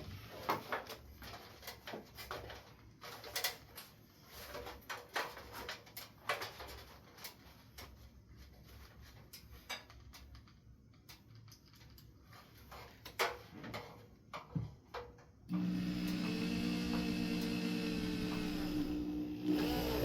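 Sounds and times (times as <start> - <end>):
power drill running: 15.5 - 20.0.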